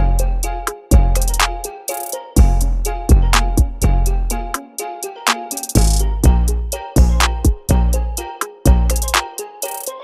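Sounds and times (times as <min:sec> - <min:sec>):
music with steady beat: 0:00.0 - 0:10.0.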